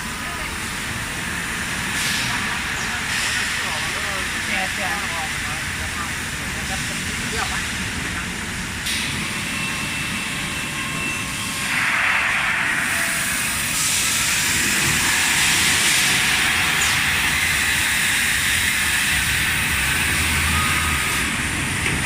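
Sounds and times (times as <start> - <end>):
machine running: 0.0 - 22.0
hiss: 1.7 - 4.4, 11.6 - 21.6.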